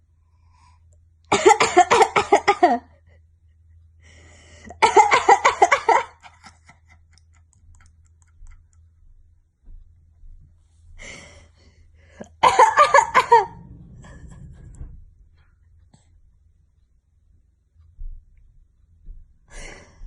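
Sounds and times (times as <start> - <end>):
woman coughing: 1.3 - 2.9, 4.7 - 6.3, 12.2 - 13.6.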